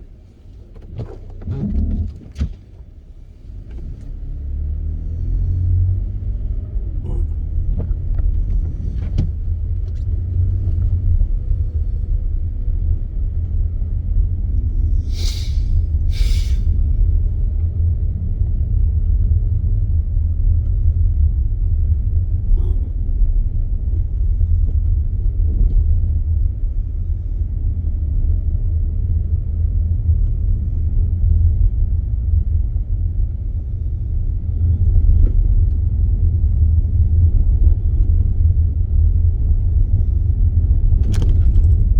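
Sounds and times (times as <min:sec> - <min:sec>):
car interior rumble: 0:00.0 - 0:41.9
short hissing swishes: 0:15.1 - 0:16.7.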